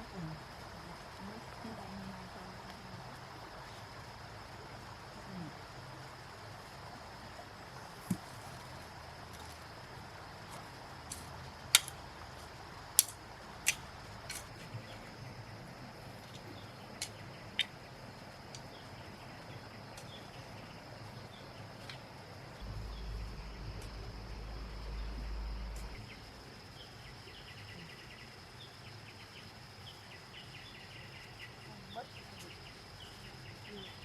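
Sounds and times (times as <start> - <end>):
low rumble: 22.6 - 27.4
high-pitched insect drone: 22.6 - 28.2.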